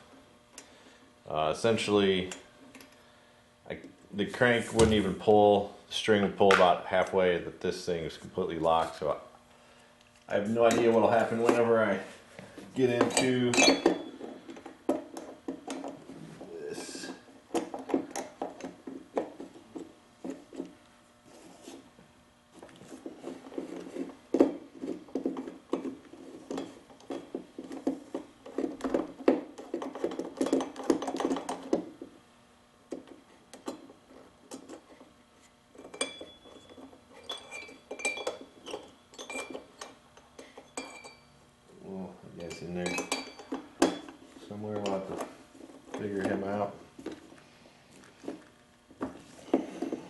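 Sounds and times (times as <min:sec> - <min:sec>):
metal tools clinking on engine: 0:12.9 - 0:14.1, 0:42.4 - 0:44.1.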